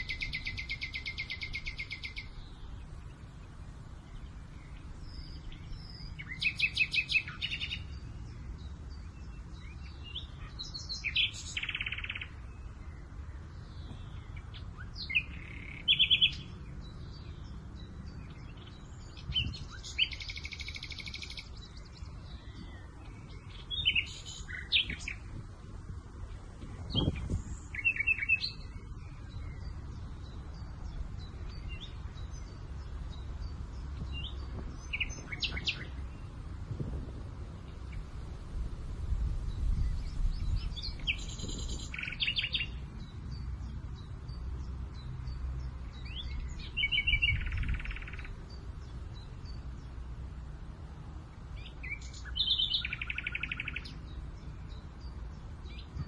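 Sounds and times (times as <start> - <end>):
low wind rumble: 0.0 - 56.0
songbirds chirping and trilling: 0.0 - 56.0.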